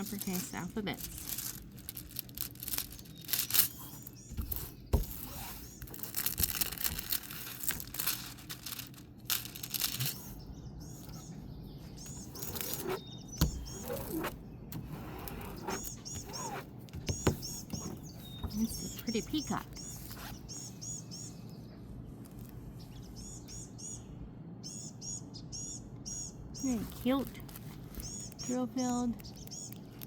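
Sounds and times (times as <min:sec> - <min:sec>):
plastic packaging crinkling: 0:00.0 - 0:10.4, 0:26.8 - 0:30.0.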